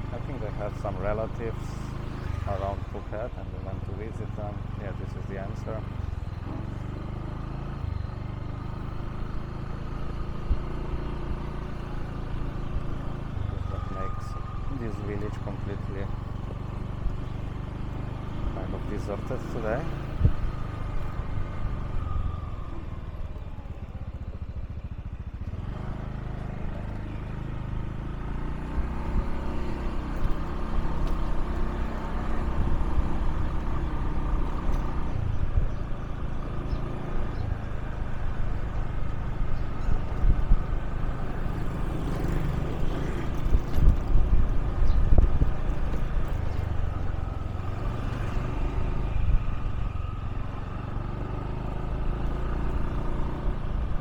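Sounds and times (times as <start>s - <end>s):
motorbike engine running: 0.0s - 54.0s.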